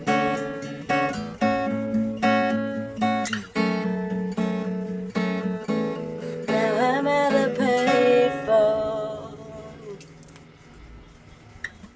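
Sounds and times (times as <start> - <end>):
acoustic guitar strumming: 0.0 - 10.2
person singing: 6.4 - 10.1.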